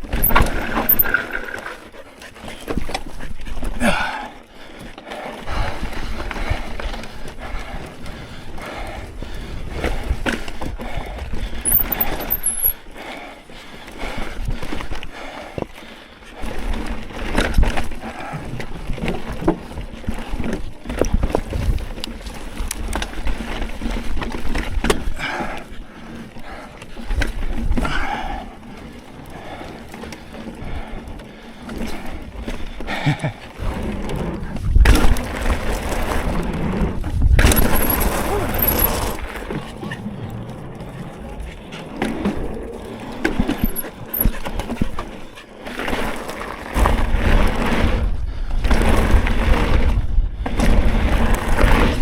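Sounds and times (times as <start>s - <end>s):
bike frame rattle: 0.0s - 1.4s, 11.6s - 12.8s, 37.4s - 39.4s, 43.3s - 44.7s
bike tyres on dirt trail: 0.0s - 52.0s
wind rumble on microphone: 16.7s - 25.2s, 33.6s - 45.0s, 46.7s - 52.0s
bike knocks and rattles: 34.6s - 39.7s.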